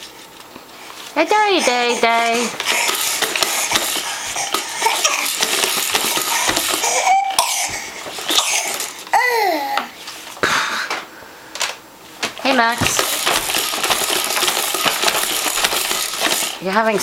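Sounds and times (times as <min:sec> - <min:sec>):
person coughing: 0:04.4 - 0:05.4, 0:06.8 - 0:09.6.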